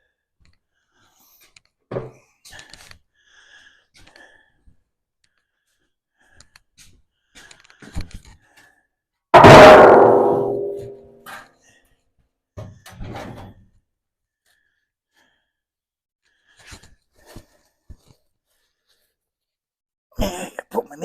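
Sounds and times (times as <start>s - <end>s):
loud metallic clang ringing: 9.4s - 11.1s.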